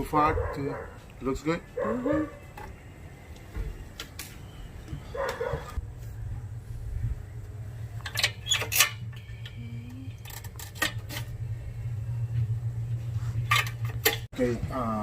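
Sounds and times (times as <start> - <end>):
low hum: 5.7 - 15.0.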